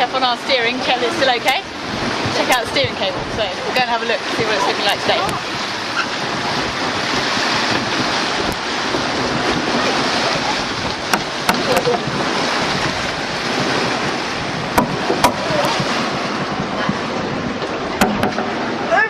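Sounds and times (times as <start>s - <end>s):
sea rushing: 0.0s - 19.0s
wind: 0.0s - 19.0s
sharp knocks: 11.1s - 12.1s, 14.7s - 17.0s, 17.6s - 18.7s.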